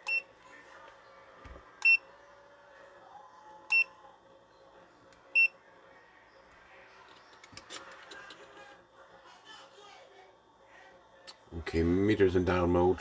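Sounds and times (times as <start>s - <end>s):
multimeter beeping: 0.0s - 0.3s.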